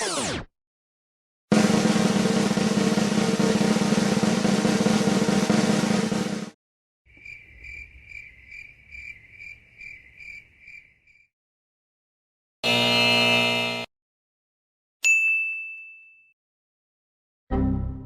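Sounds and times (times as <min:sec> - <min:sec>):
snare drum roll: 0:01.5 - 0:06.6
cricket chirping: 0:07.1 - 0:11.3.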